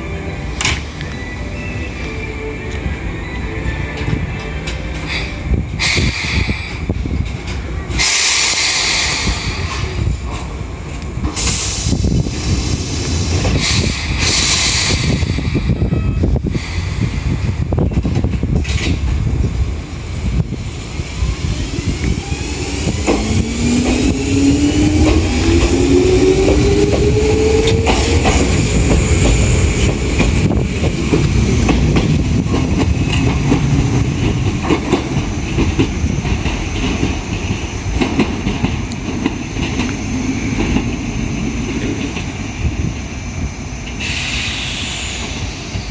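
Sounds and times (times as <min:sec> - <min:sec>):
train running rumble: 0:00.0 - 0:45.9.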